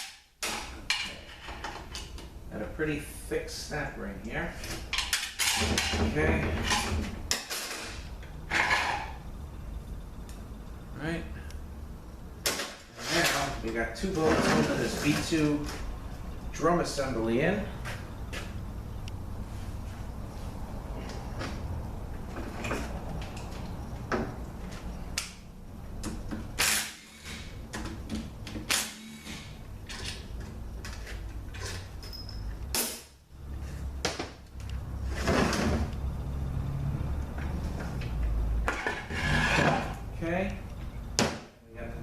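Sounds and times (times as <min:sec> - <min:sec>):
metal parts clinking and clunking: 0:04.6 - 0:09.2, 0:29.3 - 0:32.6
metal scraping: 0:05.4 - 0:09.3, 0:12.8 - 0:15.9, 0:38.6 - 0:40.0.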